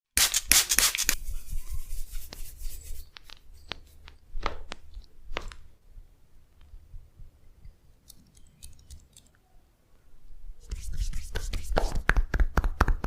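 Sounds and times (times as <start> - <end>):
rubbing and slapping on skin: 0.2 - 5.5, 10.6 - 13.0
sharp clicks: 8.0 - 9.4.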